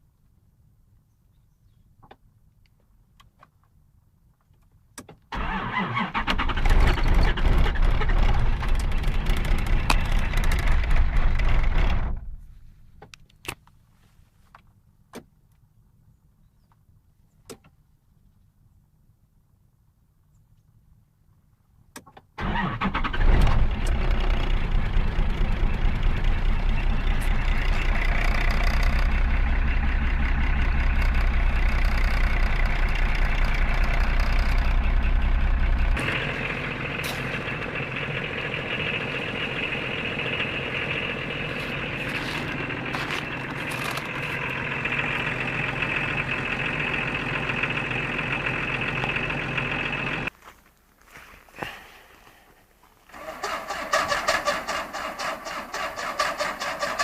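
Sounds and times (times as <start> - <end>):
diesel engine clattering: 5.4 - 12.5, 22.4 - 50.3, 53.1 - 57.0.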